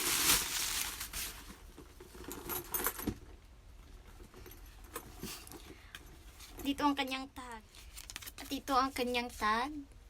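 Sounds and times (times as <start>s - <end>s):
handbag rustling: 0.0s - 1.6s.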